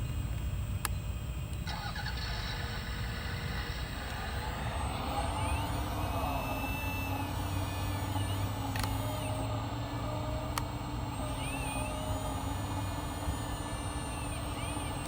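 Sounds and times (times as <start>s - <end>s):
hydraulic pump whine: 0.0s - 15.0s
steady low rumble: 0.0s - 15.0s
single click: 8.2s - 9.2s.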